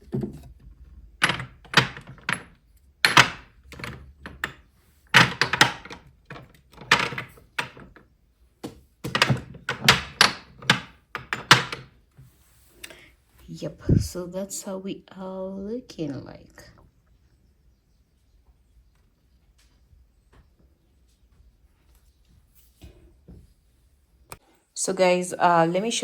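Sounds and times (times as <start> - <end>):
objects knocking on hard surface: 8.6 - 11.9.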